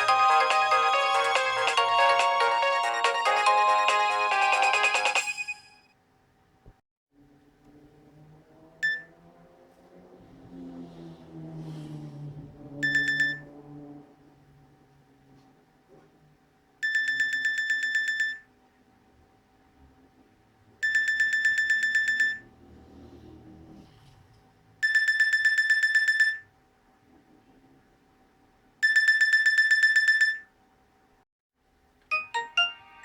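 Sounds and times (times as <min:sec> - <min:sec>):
phone ringtone electronic trill: 0:00.0 - 0:05.9, 0:12.8 - 0:13.4, 0:32.1 - 0:33.0
ringtone notes: 0:00.0 - 0:05.9, 0:12.8 - 0:13.4, 0:32.1 - 0:33.0.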